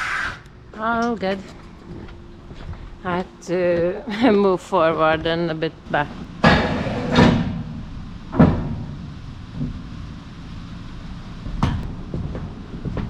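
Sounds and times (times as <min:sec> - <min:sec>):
steady low rumble: 0:00.0 - 0:13.0
sharp knocks and clunks: 0:06.4 - 0:07.7, 0:08.3 - 0:09.8.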